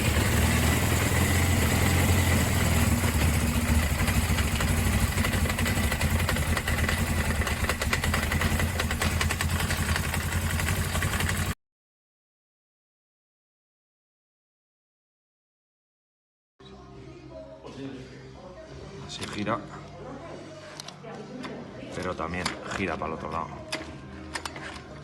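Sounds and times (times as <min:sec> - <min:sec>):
motorcycle engine idling: 0:00.0 - 0:11.6.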